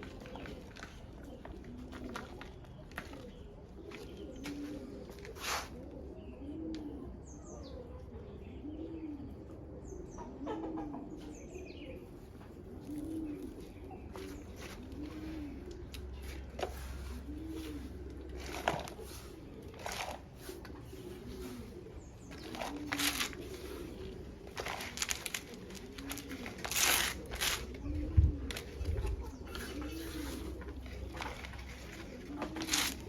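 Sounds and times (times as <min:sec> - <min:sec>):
rustling and handling noises: 0:00.0 - 0:05.9, 0:12.7 - 0:33.0
dove cooing: 0:00.0 - 0:33.0.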